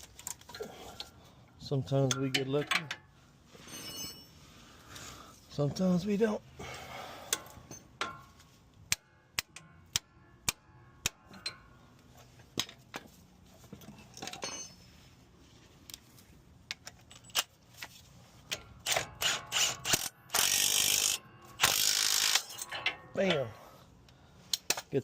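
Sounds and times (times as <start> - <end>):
ratchet wrench clicking: 18.8 - 22.7.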